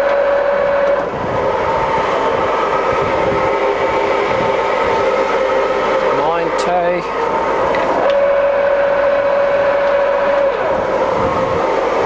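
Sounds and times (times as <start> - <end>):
gear whine: 0.0 - 12.0
lathe running: 0.0 - 12.0.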